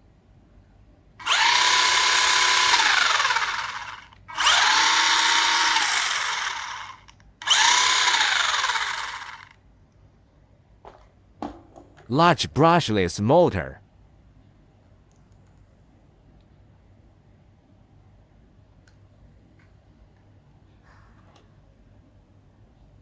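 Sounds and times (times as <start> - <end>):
electric motor whine spinning up: 1.2 - 9.4.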